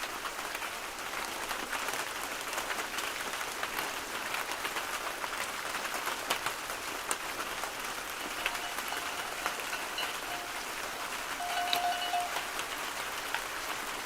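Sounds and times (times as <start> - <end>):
dense patter of rain: 0.0 - 14.0
faint thin held tones: 8.2 - 12.8.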